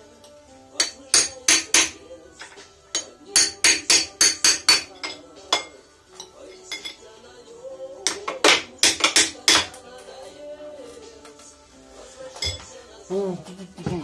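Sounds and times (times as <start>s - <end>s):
hammer tapping on metal: 0.8s - 2.0s, 2.9s - 5.7s, 8.0s - 9.8s.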